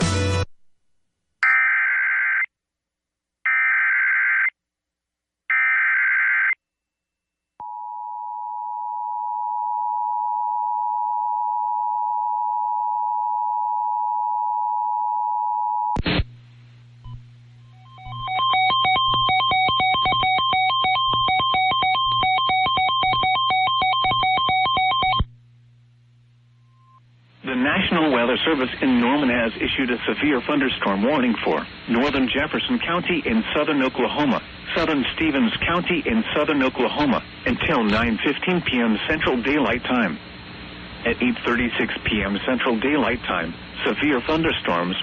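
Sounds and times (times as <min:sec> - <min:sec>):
screeching data tone bursts: 0:17.8 - 0:25.2
rapidly pulsing electronic tones: 0:17.8 - 0:25.3
two-tone attention signal: 0:17.8 - 0:25.3
low hum: 0:25.1 - 0:29.3.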